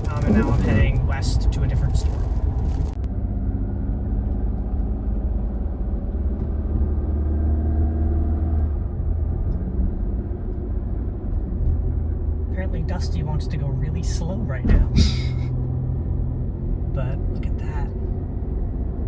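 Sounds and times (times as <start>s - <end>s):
road noise inside car: 0.0s - 19.0s
faint engine hum: 8.2s - 19.0s.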